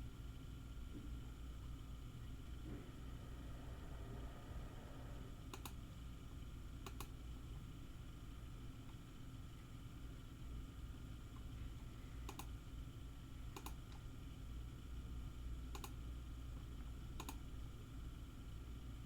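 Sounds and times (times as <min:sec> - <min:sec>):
steady low hum: 0:00.0 - 0:19.0
computer keys clicking: 0:06.8 - 0:07.1, 0:12.2 - 0:12.6, 0:13.5 - 0:14.0, 0:15.7 - 0:16.0, 0:17.2 - 0:17.4.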